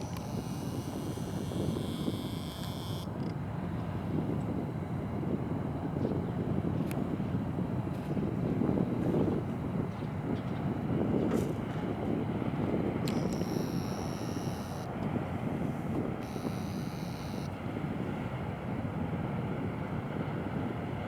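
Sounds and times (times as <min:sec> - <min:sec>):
faint high-pitched buzz: 0:00.0 - 0:03.3, 0:13.1 - 0:14.9, 0:16.2 - 0:17.5
wind buffeting microphone: 0:00.0 - 0:13.5.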